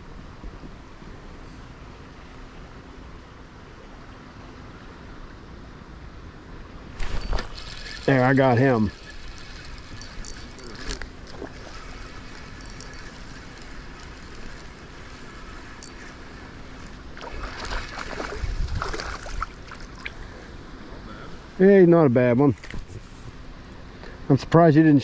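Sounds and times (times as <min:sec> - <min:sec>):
river water flowing: 0:06.8 - 0:21.9
water splashing: 0:07.0 - 0:20.3
wind on microphone: 0:17.2 - 0:19.6.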